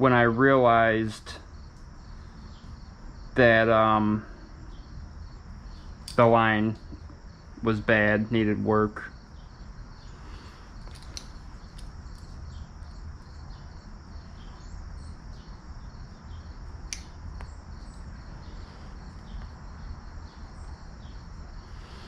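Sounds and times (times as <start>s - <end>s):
high-pitched insect chirping: 0.0s - 22.0s
sharp clicks: 16.9s - 17.5s.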